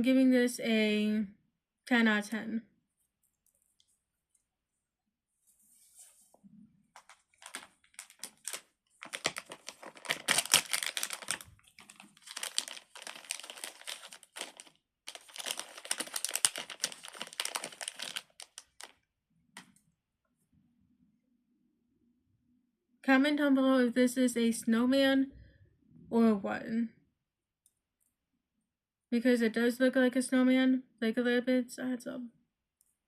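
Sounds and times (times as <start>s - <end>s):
plastic crinkling: 7.0s - 19.0s.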